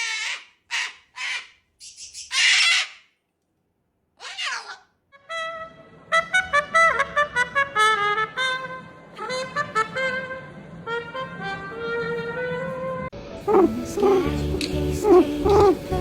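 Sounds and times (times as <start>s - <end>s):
trumpet melody: 5.1s - 15.6s.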